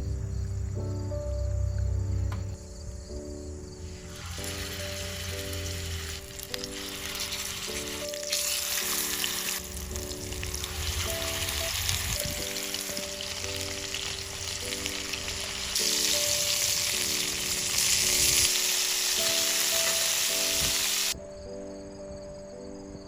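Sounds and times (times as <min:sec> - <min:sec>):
food sizzling in oil: 0:03.9 - 0:21.2.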